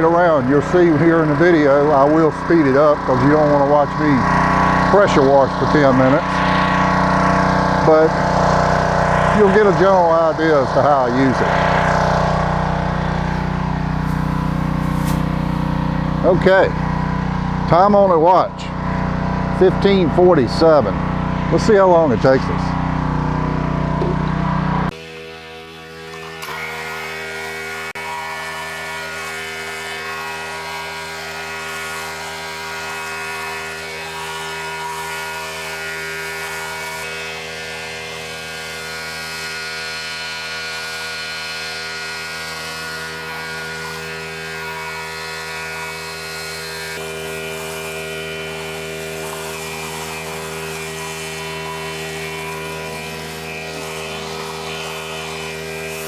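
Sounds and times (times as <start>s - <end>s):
pressure washer engine running: 0.9s - 10.1s, 11.4s - 17.8s, 46.2s - 56.0s
water spraying on concrete: 12.9s - 17.4s, 46.4s - 56.0s.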